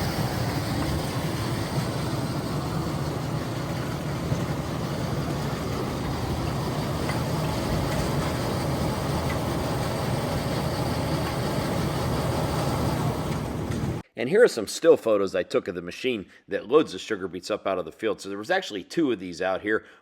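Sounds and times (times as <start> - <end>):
heavy diesel machinery droning: 0.0 - 14.0.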